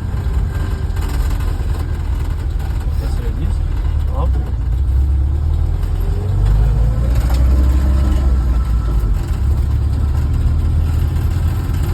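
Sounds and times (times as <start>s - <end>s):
car engine running: 0.0s - 11.9s.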